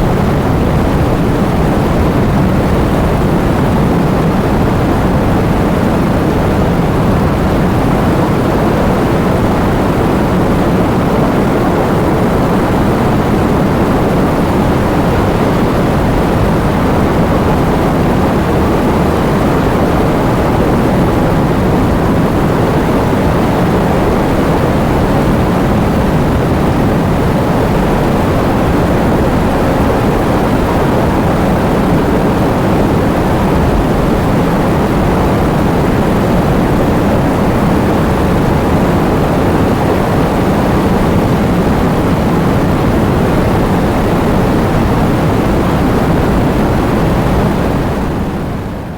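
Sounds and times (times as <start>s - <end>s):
loud rush of wind: 0.0s - 48.9s.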